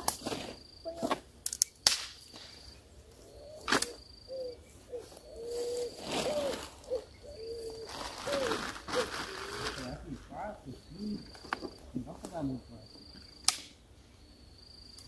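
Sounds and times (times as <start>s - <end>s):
insects trilling: 0.0s - 15.0s
low hooting calls: 2.9s - 12.9s.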